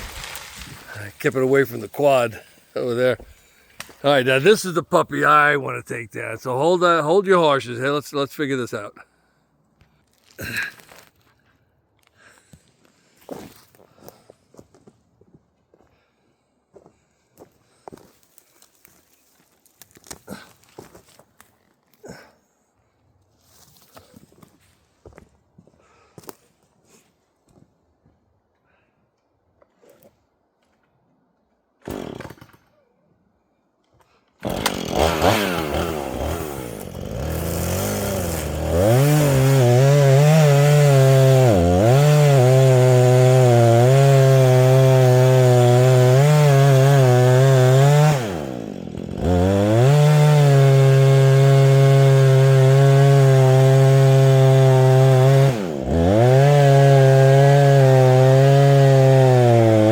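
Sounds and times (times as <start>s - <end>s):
chainsaw revving: 0.0s - 5.5s, 31.9s - 32.6s, 34.4s - 59.9s.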